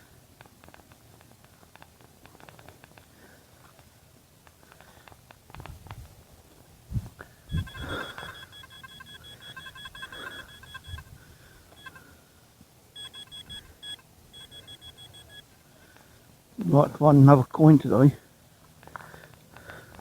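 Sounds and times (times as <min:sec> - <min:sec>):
metal detector beeping: 0:07.5 - 0:12.1, 0:13.0 - 0:15.4.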